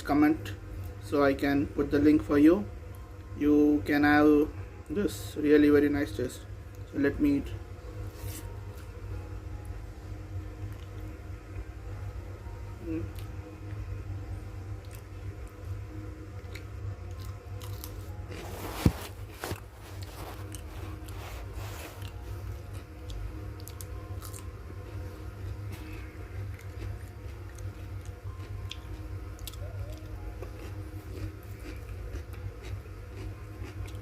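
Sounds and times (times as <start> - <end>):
steady low hum: 0.0 - 34.0
person chewing food: 16.4 - 34.0.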